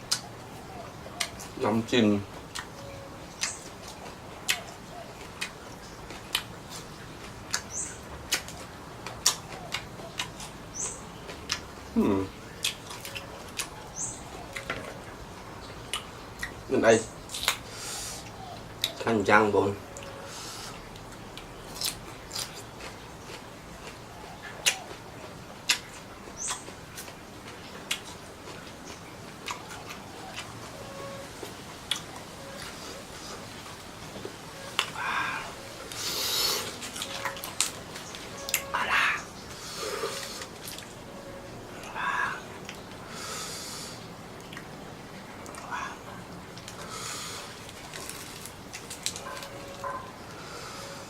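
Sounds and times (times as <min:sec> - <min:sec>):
wet eating clicks and smacks: 0:03.4 - 0:06.5, 0:07.1 - 0:07.7, 0:08.3 - 0:10.6, 0:12.6 - 0:13.8, 0:21.0 - 0:30.6, 0:31.9 - 0:32.1.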